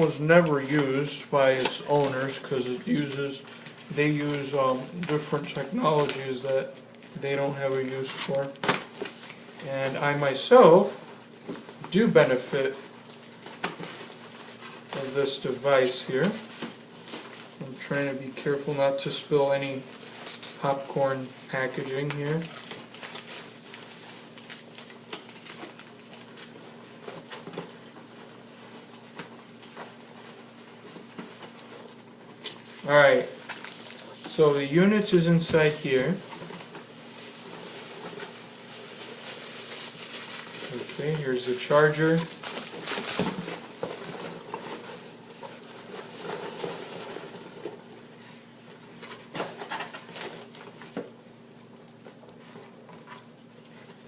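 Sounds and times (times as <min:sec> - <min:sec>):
packing peanuts rustling: 0:30.4 - 0:53.3
packaging rustling and tapping: 0:39.2 - 0:48.0.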